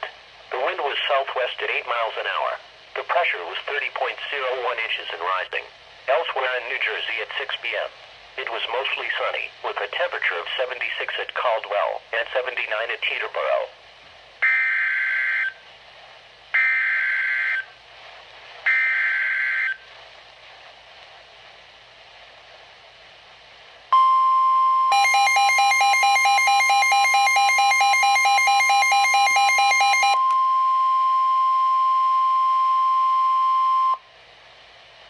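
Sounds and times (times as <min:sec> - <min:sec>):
steady alarm tone: 0:14.4 - 0:15.6, 0:16.6 - 0:17.7, 0:18.7 - 0:19.8, 0:24.0 - 0:34.0
rapidly pulsing electronic beep: 0:24.9 - 0:30.3.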